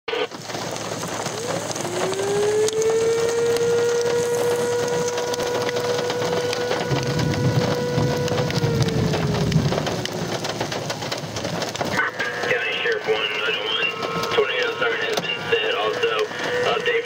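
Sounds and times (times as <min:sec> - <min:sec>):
low rushing noise: 0:01.0 - 0:17.0
warning siren winding: 0:01.2 - 0:10.8.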